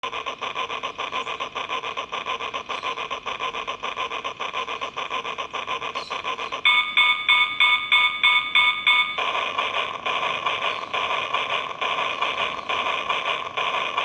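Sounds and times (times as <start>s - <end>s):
toy train steam chuffing: 0.0s - 14.0s
tinny pulsing whistle: 6.7s - 9.2s.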